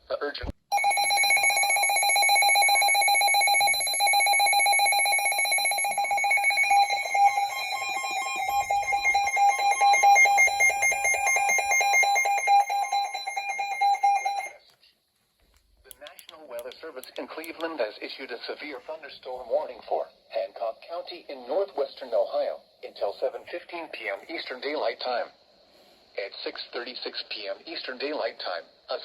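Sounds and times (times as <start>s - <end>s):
high-pitched electronic alarm tone: 0.7s - 14.6s.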